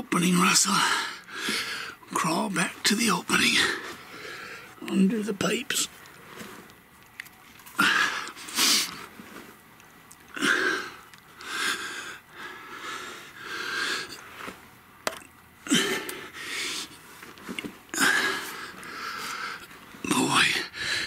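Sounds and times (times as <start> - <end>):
man breathing hard: 0.7 - 2.0, 10.4 - 14.3, 15.6 - 17.1, 17.9 - 19.8, 20.4 - 21.0.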